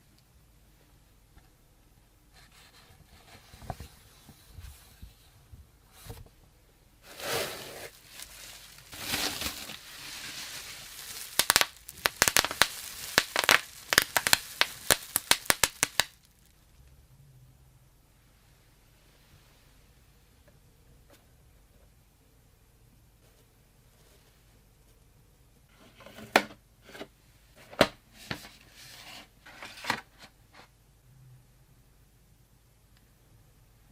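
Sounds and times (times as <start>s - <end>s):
packaging crinkling and rustling: 7.1s - 16.5s
sharp crackles: 8.0s - 16.5s.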